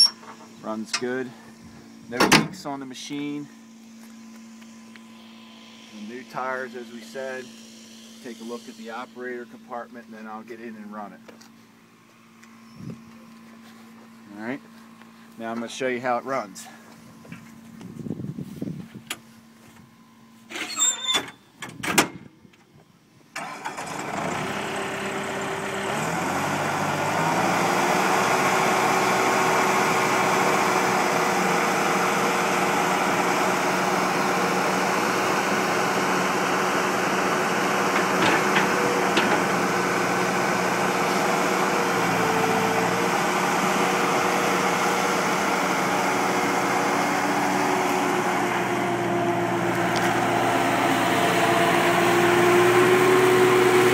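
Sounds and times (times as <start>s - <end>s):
diesel engine starting and running: 0.0s - 15.1s, 23.0s - 53.9s
engine knocks: 37.4s - 41.6s.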